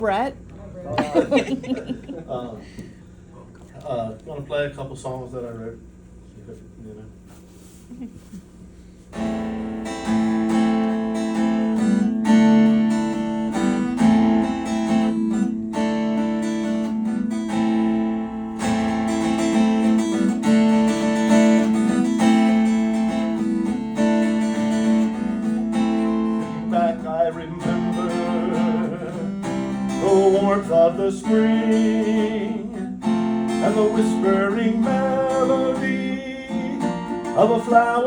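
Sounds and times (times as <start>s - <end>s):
acoustic guitar strumming chords: 9.1s - 38.0s.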